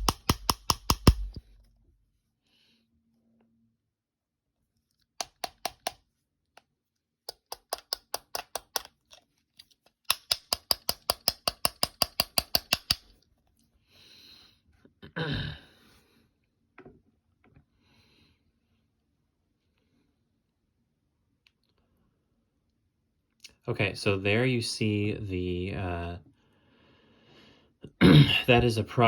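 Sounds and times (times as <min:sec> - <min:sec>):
pen tapping on a phone: 0:00.0 - 0:01.4, 0:05.2 - 0:06.0, 0:07.3 - 0:08.9, 0:10.1 - 0:13.0
phone bumping when handled: 0:00.0 - 0:01.4.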